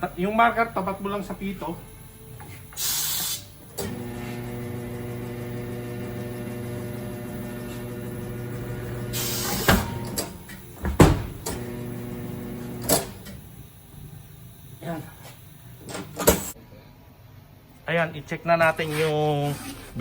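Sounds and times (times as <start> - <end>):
compressed air hiss: 2.7 - 3.9, 9.0 - 10.2
electric motor humming: 3.8 - 13.3.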